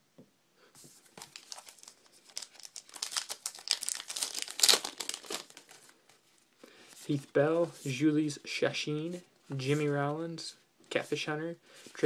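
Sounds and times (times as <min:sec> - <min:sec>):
card pack wrapper crinkling: 0:01.1 - 0:06.2.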